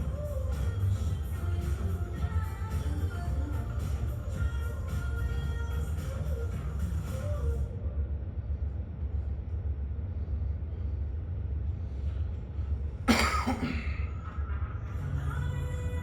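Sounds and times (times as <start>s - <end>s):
person coughing: 13.1s - 14.2s.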